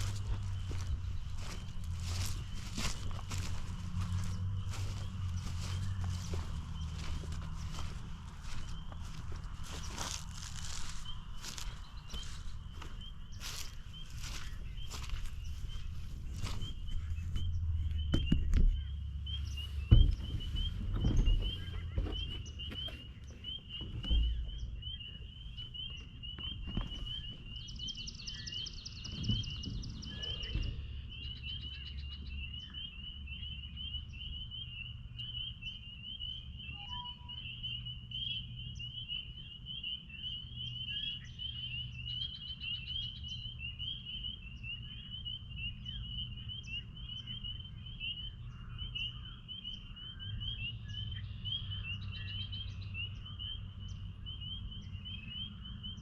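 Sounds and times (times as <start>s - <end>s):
low rumble: 0.0s - 27.8s
spring peepers chorus: 0.0s - 56.0s.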